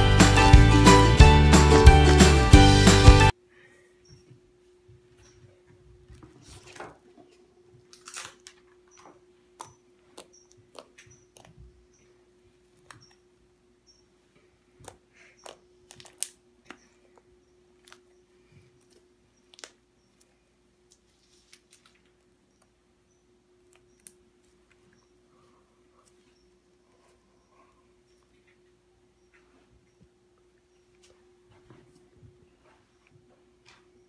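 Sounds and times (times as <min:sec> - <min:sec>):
slime clicks and crackles: 0:14.8 - 0:16.8.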